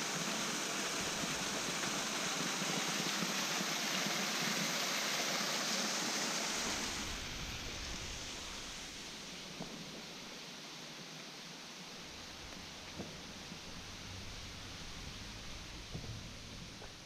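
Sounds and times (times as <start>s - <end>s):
water splashing over waterfall: 0.0s - 17.0s.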